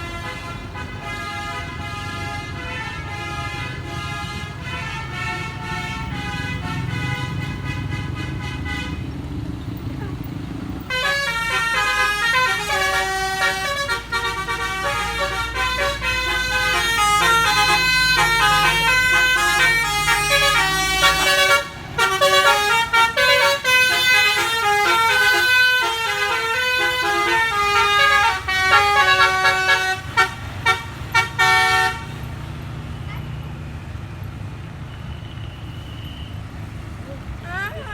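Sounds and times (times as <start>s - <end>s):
multi-trumpet air horn tune: 10.9s - 32.2s.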